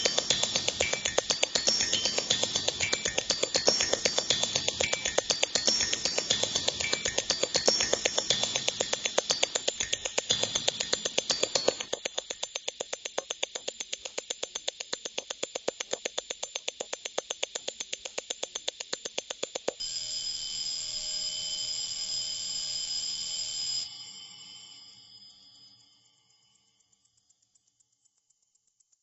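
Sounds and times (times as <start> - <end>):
held high tones: 0.0 - 19.8
rapid mechanical clicking: 0.0 - 19.8
steady hiss: 0.0 - 19.8.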